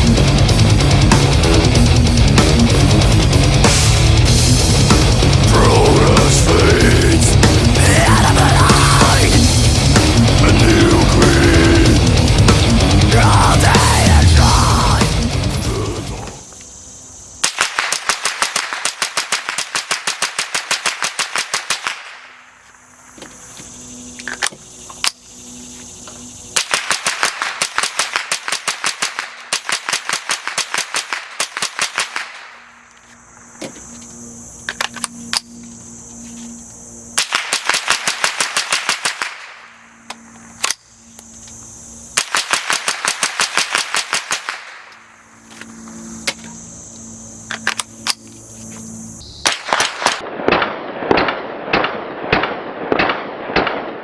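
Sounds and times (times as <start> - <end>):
suppressed rifle shots: 17.4 - 22.3, 42.2 - 45.0, 49.4 - 54.0.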